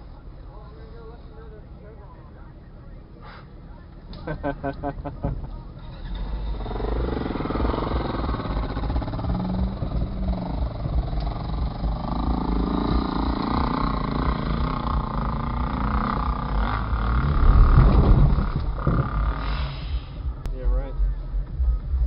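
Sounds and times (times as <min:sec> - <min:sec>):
suv engine running under load: 0:04.4 - 0:20.5.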